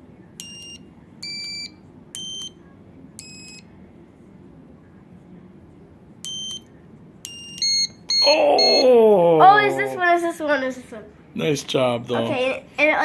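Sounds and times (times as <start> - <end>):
electronic buzzer beeps: 0.4 - 2.6, 3.2 - 3.6, 6.2 - 6.7, 7.3 - 8.9.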